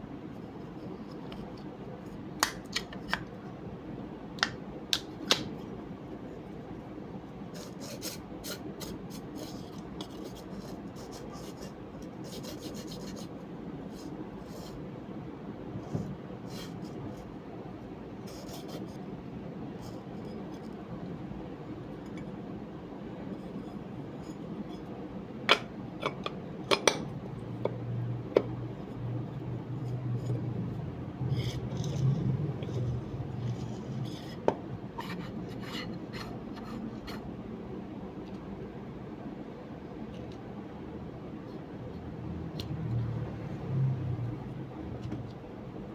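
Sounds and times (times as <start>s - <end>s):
low steady hum: 0.0s - 45.9s
small hard parts scraped: 31.2s - 37.3s.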